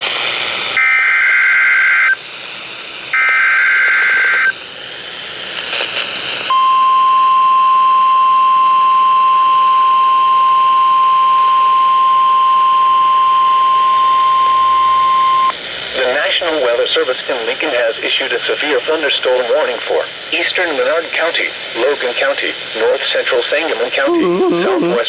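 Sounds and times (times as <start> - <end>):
radio hiss: 0.0 - 25.0
buzzy digital header bursts: 6.5 - 15.5
warning alarm tone: 6.5 - 15.5.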